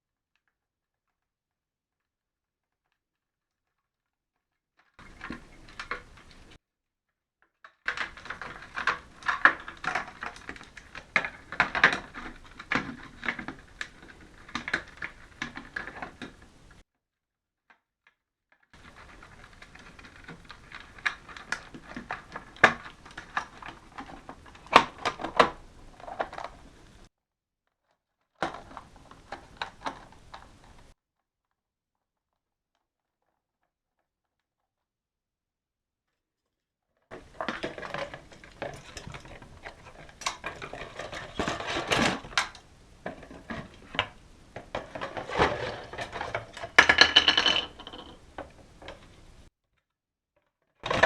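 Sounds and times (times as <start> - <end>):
small hard objects clicking: 5.0 - 6.6, 7.9 - 16.8, 18.8 - 27.1, 37.1 - 49.5.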